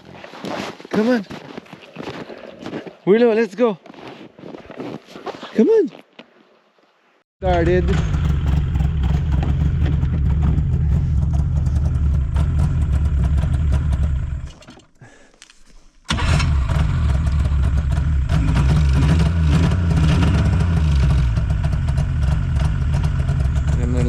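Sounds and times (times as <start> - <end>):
snowmobile engine idling: 7.4 - 14.5, 16.6 - 24.0.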